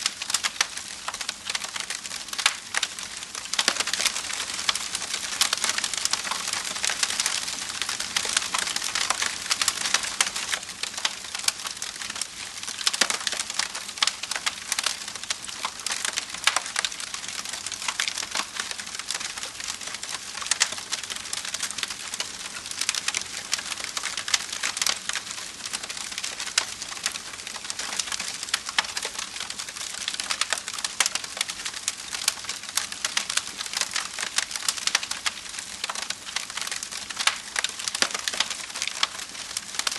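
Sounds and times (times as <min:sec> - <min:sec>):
small sharp pops and snaps: 0:00.0 - 0:11.6, 0:32.1 - 0:39.9
wood fire crackling: 0:00.0 - 0:39.9.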